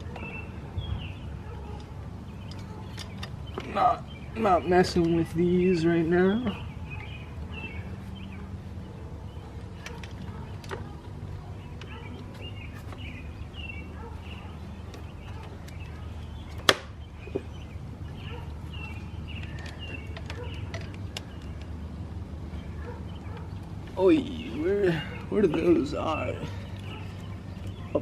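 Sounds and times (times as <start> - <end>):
motorcycle parts clicking and knocking: 1.0 - 3.9, 9.3 - 13.4, 14.0 - 22.0.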